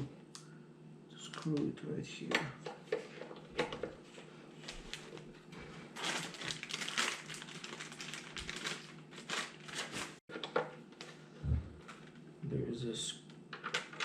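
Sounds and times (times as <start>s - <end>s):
plastic packaging rustling: 4.6s - 10.2s.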